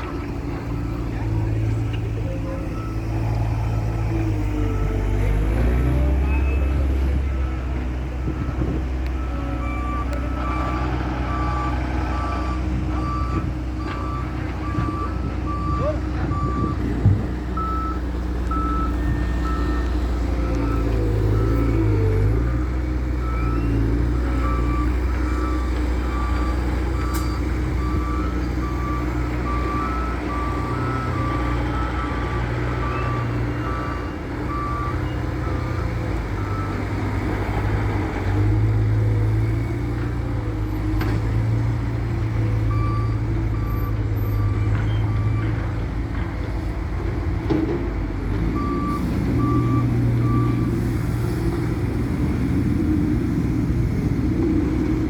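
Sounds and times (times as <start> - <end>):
reversing alarm beeping: 0.0 - 37.7, 42.2 - 46.2, 48.5 - 50.8
diesel engine running under load: 0.0 - 55.0.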